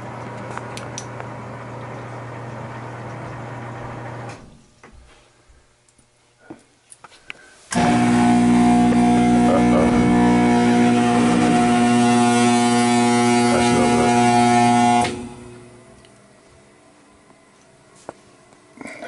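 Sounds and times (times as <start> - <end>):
blower motor humming: 0.0 - 4.6, 7.4 - 17.4.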